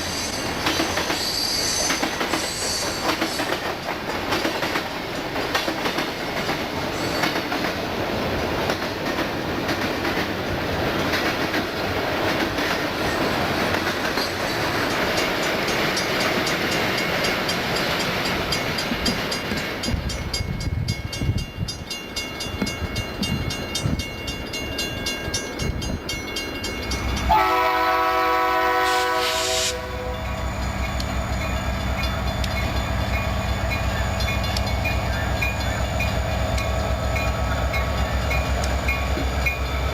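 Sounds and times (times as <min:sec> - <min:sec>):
freight train wheels clicking on rails: 0:00.0 - 0:39.9
locomotive air horn blast: 0:27.3 - 0:30.3.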